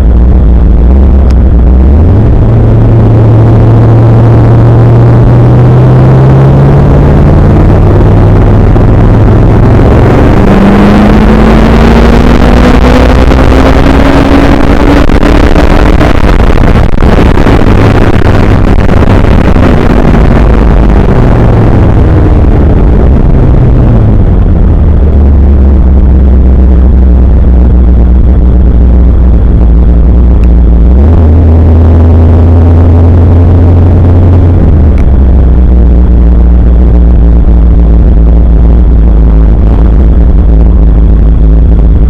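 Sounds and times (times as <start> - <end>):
car engine accelerating: 0.0 - 42.0.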